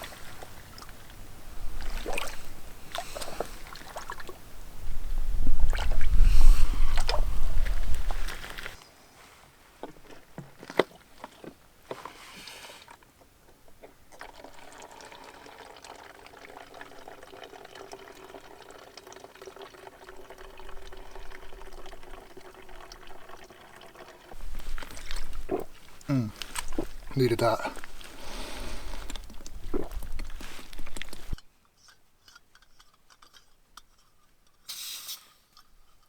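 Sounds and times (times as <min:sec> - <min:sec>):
liquid pouring into container: 0:13.8 - 0:31.4.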